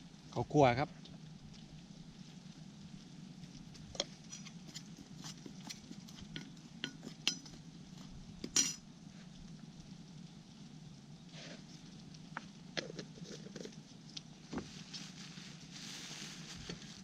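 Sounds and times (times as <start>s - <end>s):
spoon scraping a bowl: 4.0s - 8.8s.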